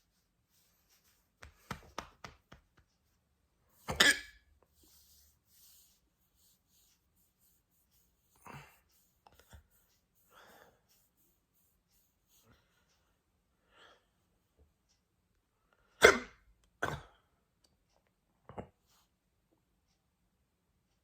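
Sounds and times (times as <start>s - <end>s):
person hiccuping: 3.9s - 4.3s, 16.0s - 17.1s.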